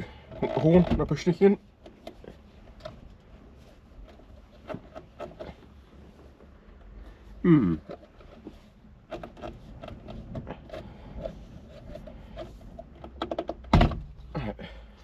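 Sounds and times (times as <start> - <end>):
loud thunk: 13.7 - 14.1.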